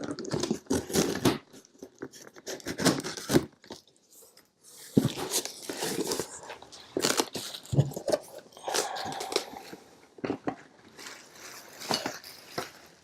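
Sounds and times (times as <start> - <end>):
packaging crackling and crunching: 0.0 - 13.0
rustling: 4.2 - 13.0.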